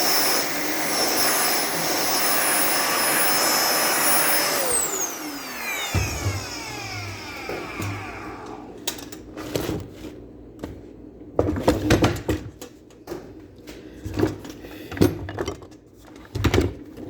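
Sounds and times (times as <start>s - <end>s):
carpet cleaner motor spinning down: 0.0s - 8.8s.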